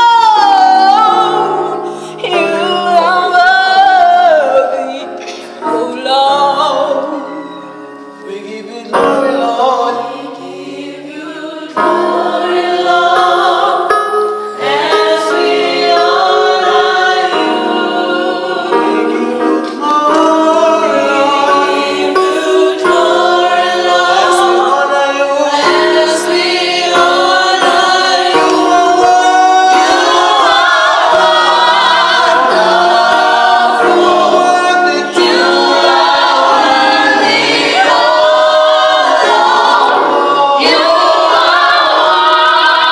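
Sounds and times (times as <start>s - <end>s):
choir singing in harmony: 0.0s - 42.9s.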